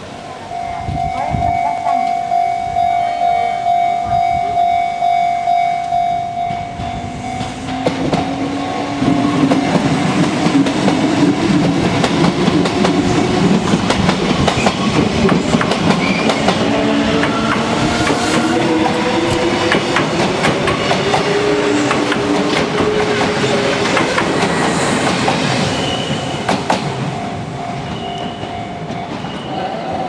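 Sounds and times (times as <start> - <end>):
level crossing bell ringing: 0.5 - 10.1
train motor hum: 5.8 - 27.8
train wheels clattering over joints: 7.3 - 27.2.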